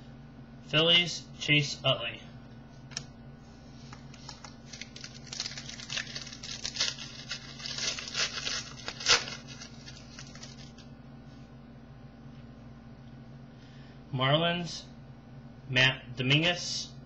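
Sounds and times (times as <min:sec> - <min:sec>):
foil wrapper crinkling and tearing: 0:04.1 - 0:10.9.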